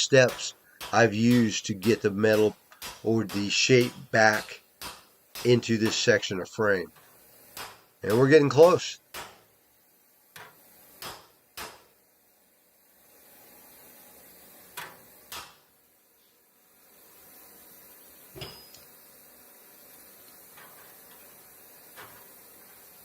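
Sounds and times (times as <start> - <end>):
hammer striking steel: 0.0 - 6.3, 7.0 - 9.6, 10.3 - 12.0, 14.8 - 15.7, 18.4 - 18.9
faint steady hiss: 0.0 - 23.0.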